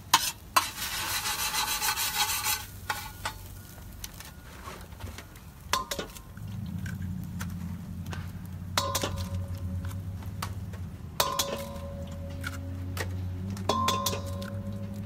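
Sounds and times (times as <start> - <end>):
metal utensil clinking on pan: 0.1 - 3.5, 5.7 - 6.2, 8.7 - 10.0, 11.2 - 15.0.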